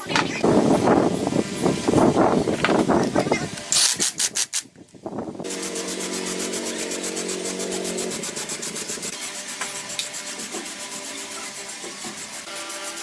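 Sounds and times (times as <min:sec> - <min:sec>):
steady low hum: 0:05.0 - 0:12.9
rapid hand sanding strokes: 0:05.4 - 0:13.0.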